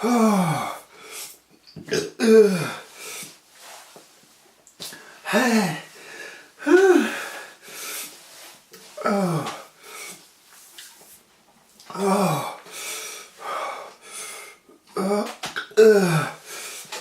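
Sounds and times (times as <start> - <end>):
man moaning in pain: 0.0 - 0.8, 2.2 - 2.8, 5.3 - 5.9, 6.6 - 7.2, 9.0 - 9.6, 11.9 - 12.6, 14.9 - 16.4
heavy wheezy breathing: 4.9 - 10.2, 12.0 - 14.7.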